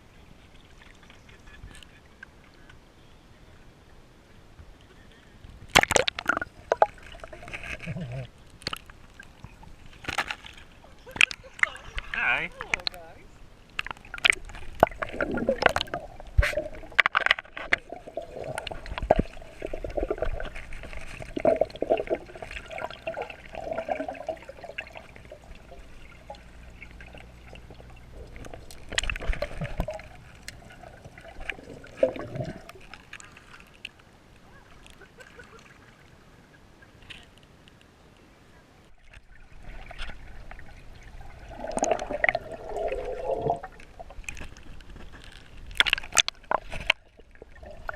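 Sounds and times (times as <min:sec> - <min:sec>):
water sloshing and gurgling: 0:05.0 - 0:37.5, 0:38.8 - 0:47.9
splashes and knocks: 0:05.7 - 0:08.0, 0:13.7 - 0:26.0, 0:43.6 - 0:47.9.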